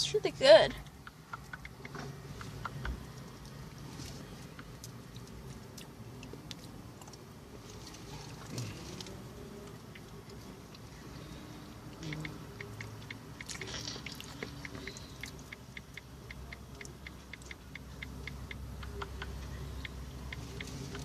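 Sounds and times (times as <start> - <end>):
low steady rumble: 0.0 - 21.0
fast even ticking: 0.8 - 3.1, 12.0 - 21.0.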